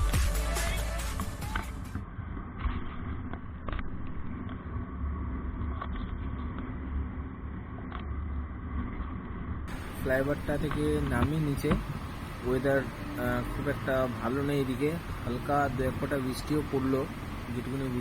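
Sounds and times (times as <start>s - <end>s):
background music: 0.0s - 2.0s
road and wind rumble: 1.2s - 18.0s
muffled motorcycle engine hum: 1.4s - 18.0s
faint knocks: 10.6s - 12.0s.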